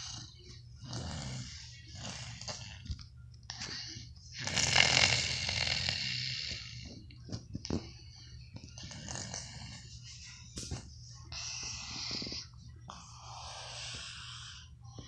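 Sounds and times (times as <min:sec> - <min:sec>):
person snoring: 0:00.8 - 0:02.7, 0:04.4 - 0:06.7.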